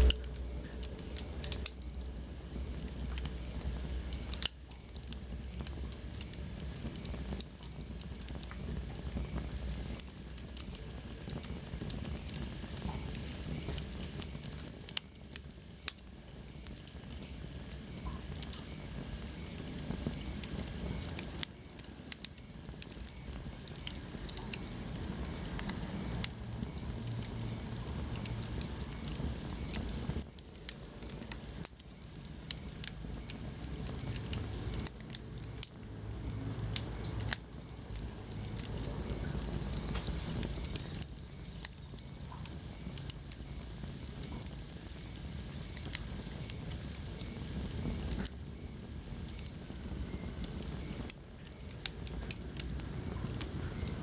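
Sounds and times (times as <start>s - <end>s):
fire hiss: 0.0s - 54.0s
wood fire crackling and popping: 0.0s - 54.0s
faint high whistle: 25.8s - 27.0s.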